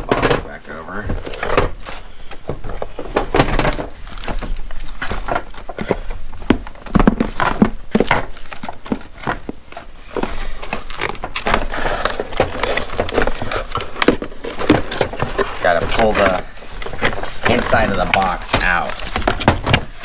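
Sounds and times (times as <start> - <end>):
cardboard and plastic rustling: 0.0 - 20.0.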